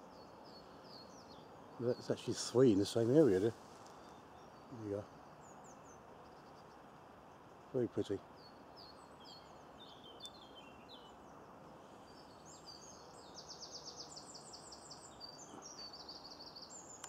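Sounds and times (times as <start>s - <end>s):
songbirds singing: 0.0s - 17.0s
steady background hiss: 0.0s - 17.0s.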